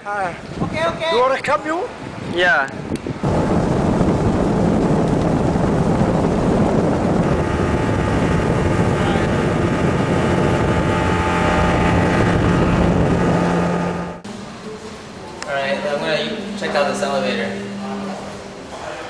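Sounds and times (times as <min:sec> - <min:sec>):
motorboat engine running: 0:03.2 - 0:14.3.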